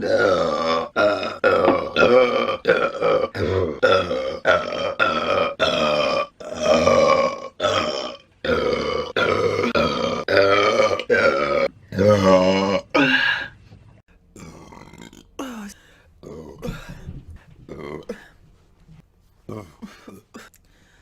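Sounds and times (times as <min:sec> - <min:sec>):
woman belching: 0:00.0 - 0:13.4.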